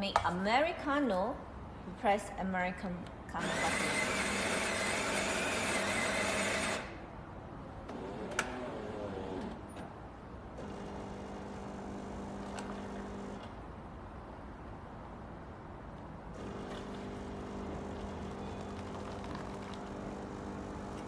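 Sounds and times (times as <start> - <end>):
motor whir: 3.4 - 7.0
coffee grinder running: 10.6 - 13.4, 16.4 - 21.0
pump humming: 10.6 - 13.6, 16.3 - 21.0.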